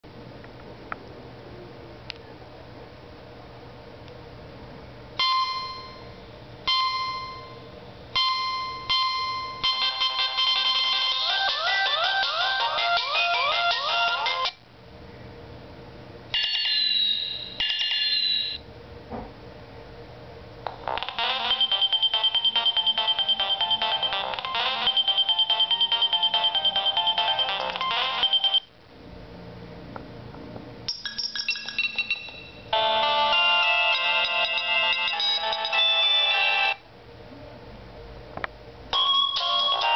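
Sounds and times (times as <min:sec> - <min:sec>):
mobile phone ringtone melodies: 0:05.2 - 0:07.6, 0:08.2 - 0:14.5, 0:16.4 - 0:18.6, 0:21.0 - 0:28.7, 0:30.9 - 0:36.8, 0:38.9 - 0:39.9.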